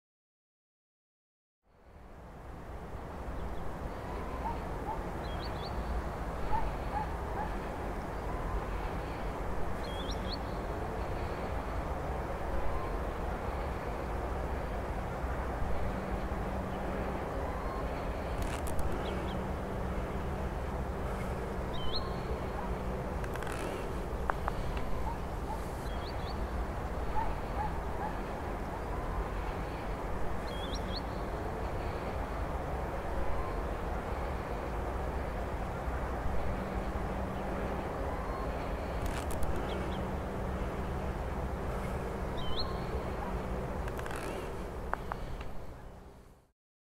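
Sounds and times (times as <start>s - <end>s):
bird chirps: 21.7s - 22.3s, 42.4s - 43.0s.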